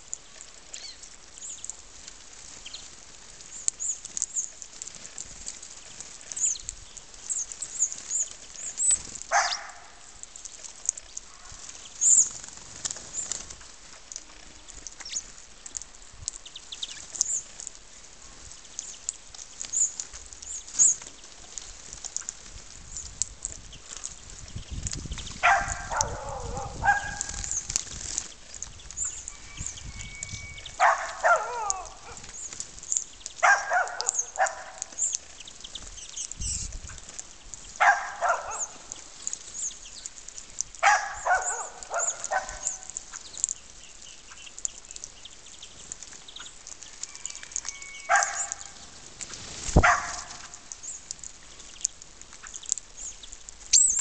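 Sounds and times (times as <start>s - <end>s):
small birds chirping: 0.0s - 54.0s.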